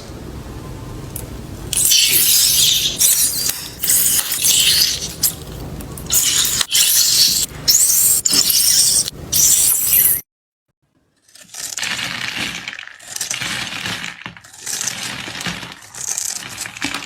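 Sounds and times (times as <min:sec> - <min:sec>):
slime squelching by hand: 0:01.7 - 0:10.2.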